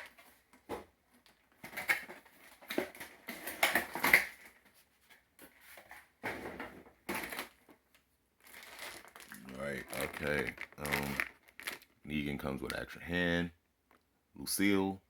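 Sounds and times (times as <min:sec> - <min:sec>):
cardboard and plastic rustling: 0:00.0 - 0:11.9.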